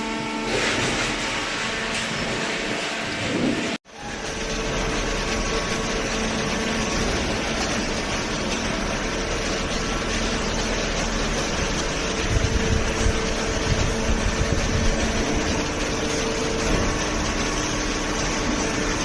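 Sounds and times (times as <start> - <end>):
baler machine hum: 0.0 - 19.0.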